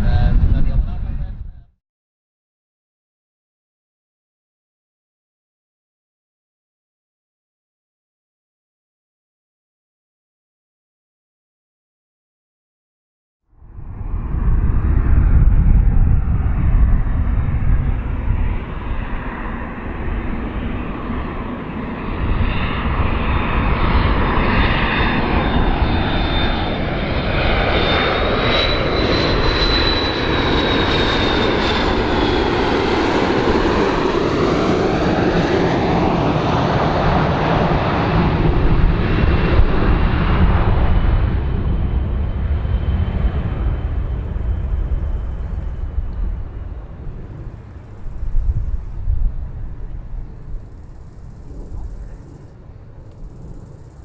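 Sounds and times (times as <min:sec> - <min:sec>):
aeroplane engines rumbling: 0:00.0 - 0:01.7, 0:13.5 - 0:54.0
high engine whine: 0:13.6 - 0:54.0.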